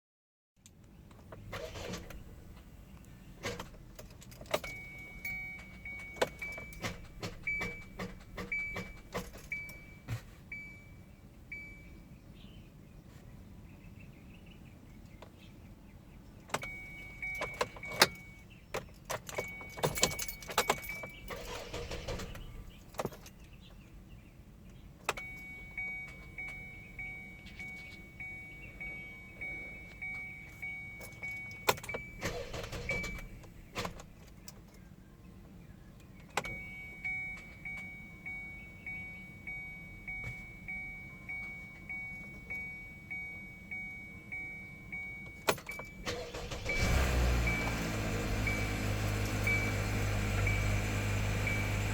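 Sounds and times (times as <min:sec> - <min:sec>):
car warning chime beeping: 0:04.5 - 0:12.5, 0:16.4 - 0:23.6, 0:25.1 - 0:33.7, 0:35.9 - 0:51.9
keys jangling: 0:17.4 - 0:21.4.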